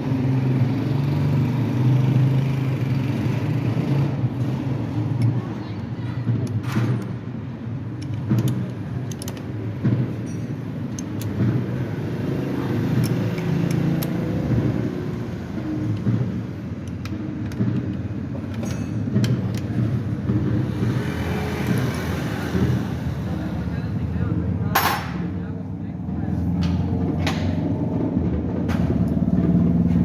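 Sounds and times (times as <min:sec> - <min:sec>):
sharp clicks and knocks: 0:06.2 - 0:22.9.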